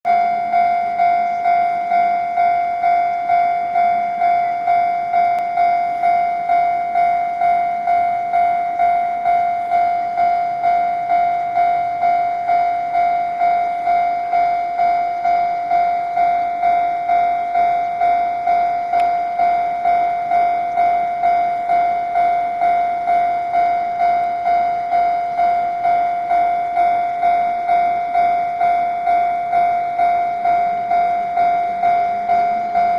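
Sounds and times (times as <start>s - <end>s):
level crossing alarm ringing: 0.1s - 32.9s.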